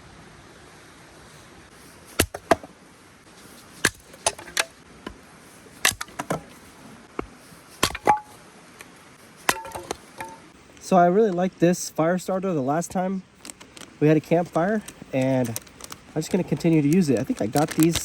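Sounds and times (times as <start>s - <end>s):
axe chopping firewood: 2.1s - 2.8s, 3.5s - 8.4s, 9.4s - 10.5s.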